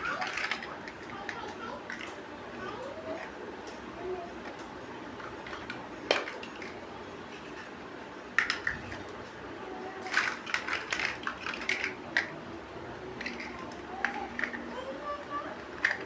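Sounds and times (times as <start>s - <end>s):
plastic toy bricks clicking: 8.4s - 8.8s, 10.0s - 12.3s, 13.2s - 14.7s, 15.7s - 16.0s.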